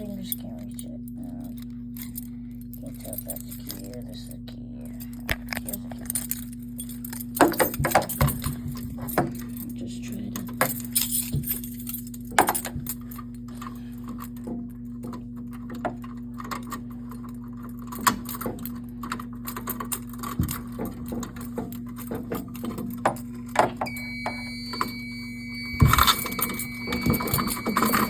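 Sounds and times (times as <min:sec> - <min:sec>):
keys jingling and clicking: 0:00.0 - 0:24.0, 0:25.8 - 0:28.0
low electrical hum: 0:00.0 - 0:28.0
high-pitched electronic tone: 0:23.9 - 0:28.0.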